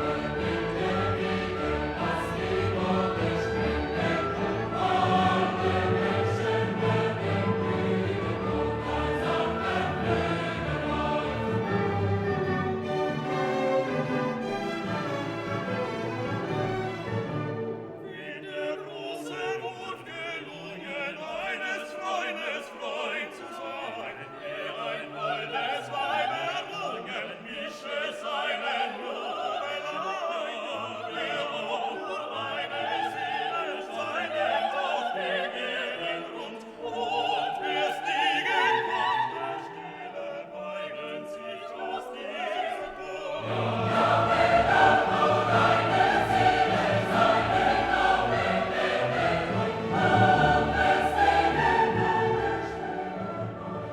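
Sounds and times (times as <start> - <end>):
choral and orchestral music: 0.0 - 53.9.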